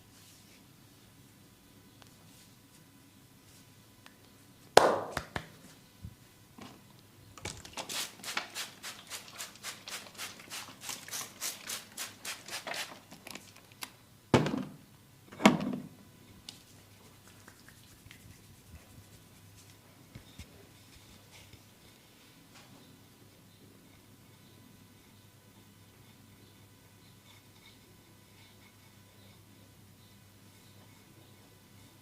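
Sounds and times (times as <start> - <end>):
loud hand slaps on body: 4.8 - 5.5.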